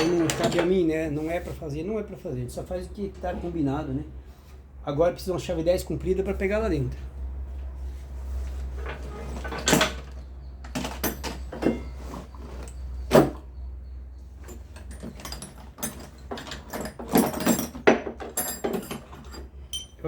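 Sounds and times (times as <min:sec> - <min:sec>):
tools knocking and clinking: 0:00.0 - 0:00.8, 0:08.9 - 0:12.0, 0:14.4 - 0:20.0.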